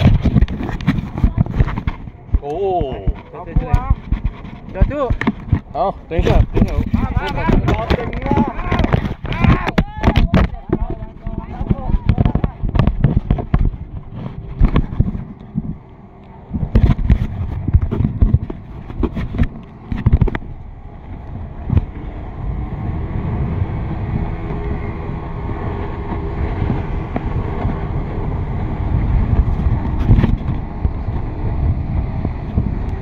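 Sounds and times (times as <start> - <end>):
sharp knocks and bumps: 0.0 - 15.8, 16.5 - 22.0, 29.3 - 31.3
boat motor rumbling: 0.0 - 33.0
wind buffeting microphone: 0.0 - 33.0.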